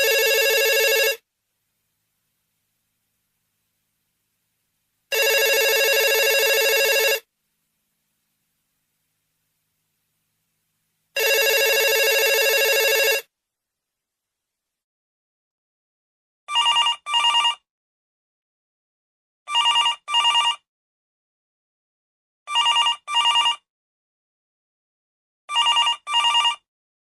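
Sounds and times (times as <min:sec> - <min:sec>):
old telephone ringing: 0:00.0 - 0:01.2, 0:05.1 - 0:07.2, 0:11.2 - 0:13.2.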